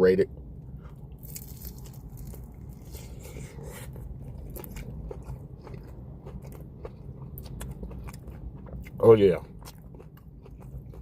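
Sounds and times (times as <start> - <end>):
low steady hum: 0.0 - 11.0
person chewing crunchy food: 0.6 - 11.0.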